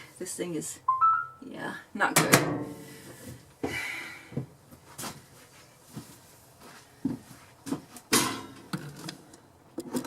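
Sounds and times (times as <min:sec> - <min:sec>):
objects knocking and clunking: 0:07.6 - 0:10.0.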